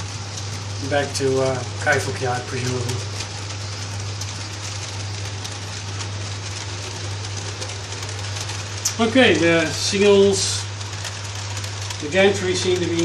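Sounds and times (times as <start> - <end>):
constant low hum: 0.0 - 13.0
model train wheels rattling: 0.0 - 13.0.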